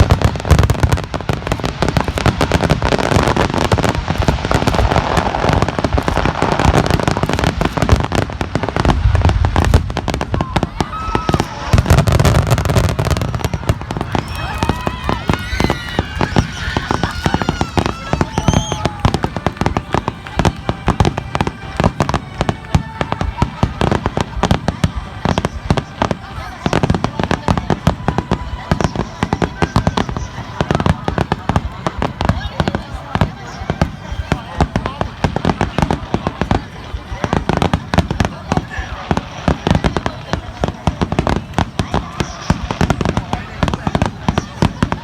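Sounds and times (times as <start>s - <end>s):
aerial fireworks bursting: 0.0s - 45.0s
dense fireworks crackling: 0.0s - 45.0s.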